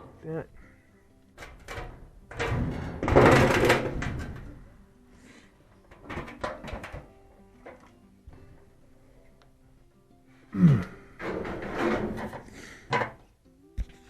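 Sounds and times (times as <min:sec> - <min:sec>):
sheet metal clattering and scraping: 0:01.4 - 0:04.7, 0:05.9 - 0:07.1, 0:11.1 - 0:13.2.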